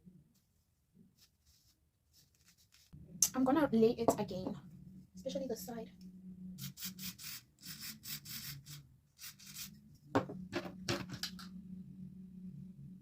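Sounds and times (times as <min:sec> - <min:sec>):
low steady hum: 0:02.8 - 0:13.0
scratchy rubbing on hair: 0:06.6 - 0:09.7.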